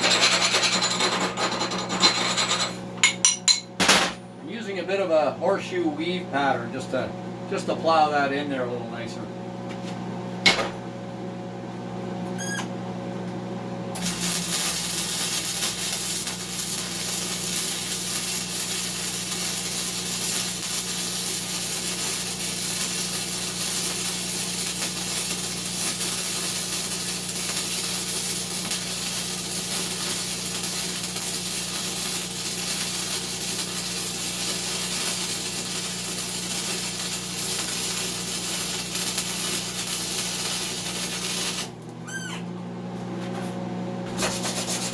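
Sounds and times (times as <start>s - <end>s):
welding arc hissing: 14.0s - 41.8s, 44.1s - 44.9s.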